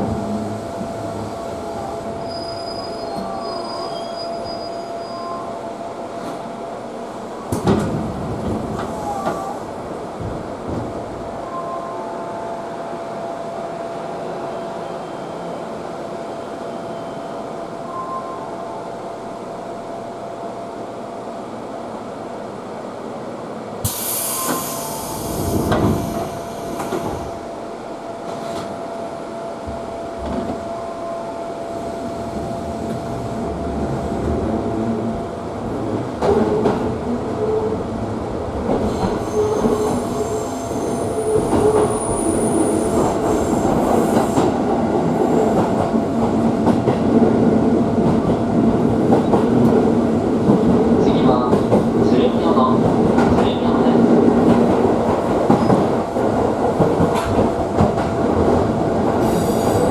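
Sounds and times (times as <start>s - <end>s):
electric train rumbling: 0.0s - 59.9s.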